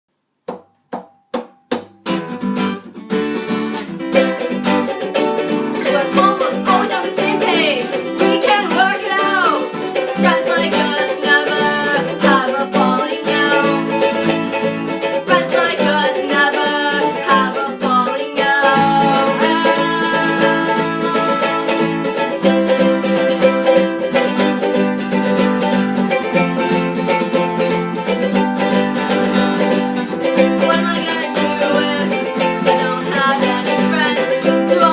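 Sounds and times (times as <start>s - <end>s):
band music with plucked strings: 0.5s - 34.9s.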